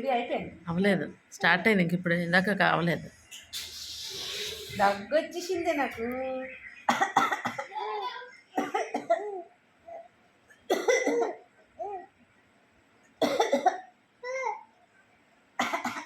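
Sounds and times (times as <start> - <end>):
elderly woman coughing: 6.9 - 7.8, 8.6 - 9.4, 10.7 - 11.4, 13.2 - 13.9, 15.6 - 16.0.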